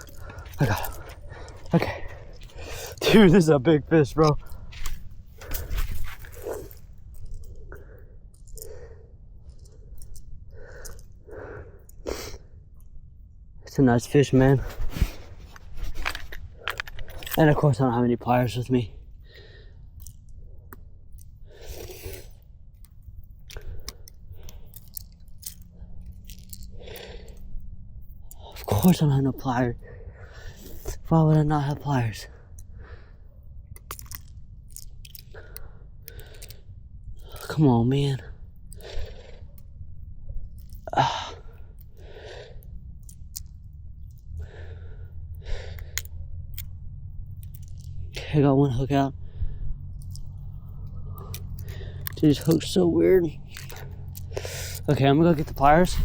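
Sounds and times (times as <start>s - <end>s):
person breathing out heavily: 0.0s - 3.1s, 49.2s - 52.2s, 53.7s - 54.9s
low steady rumble: 0.0s - 56.0s
faint small clicks: 4.2s - 11.2s, 19.9s - 27.5s, 33.7s - 36.6s, 42.6s - 44.7s, 45.4s - 48.2s, 50.0s - 52.8s
handling clicks: 14.3s - 17.8s, 50.0s - 56.0s.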